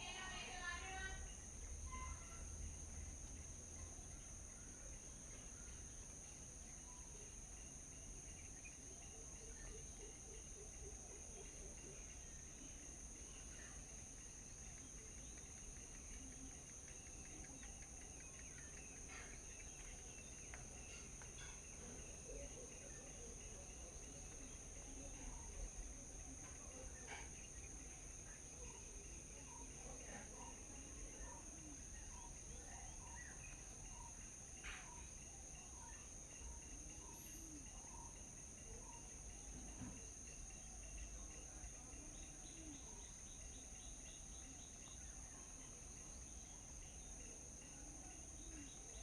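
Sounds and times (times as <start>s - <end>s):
insects droning: 0.0s - 49.0s.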